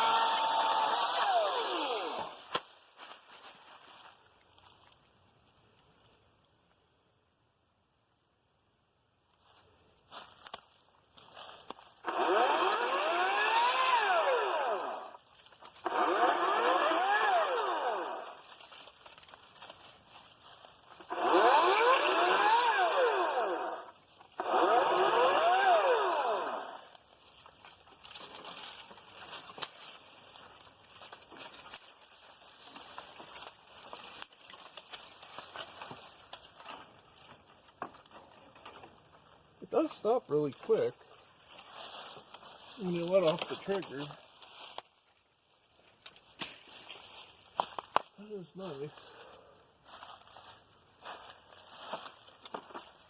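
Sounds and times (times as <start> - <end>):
battery chainsaw whining: 0.0 - 2.5, 12.0 - 15.2, 15.8 - 18.4, 21.0 - 27.0
faint rustling and crackling: 2.5 - 6.4, 18.4 - 21.1, 26.9 - 39.7, 40.4 - 53.0.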